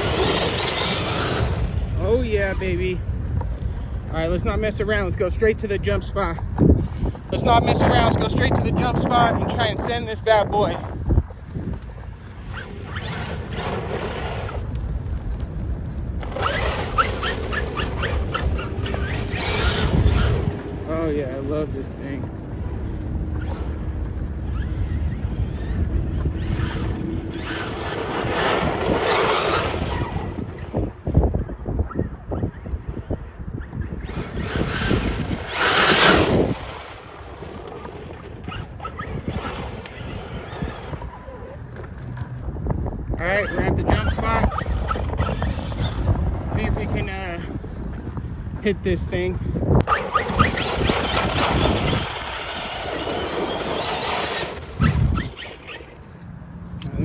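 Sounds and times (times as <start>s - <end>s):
rc car tyre and drivetrain noise: 0.0s - 57.0s
wind on microphone: 0.0s - 57.0s.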